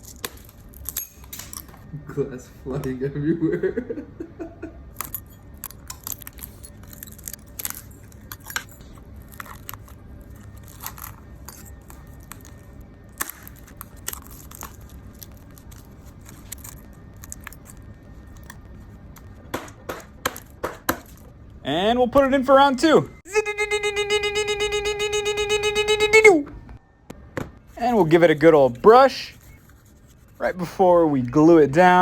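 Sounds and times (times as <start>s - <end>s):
low steady hum: 0.0s - 32.0s
glass fragments cracking: 5.0s - 9.8s.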